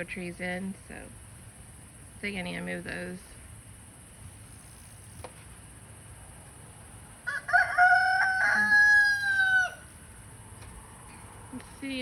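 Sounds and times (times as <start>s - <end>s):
rooster crowing: 7.2s - 10.0s.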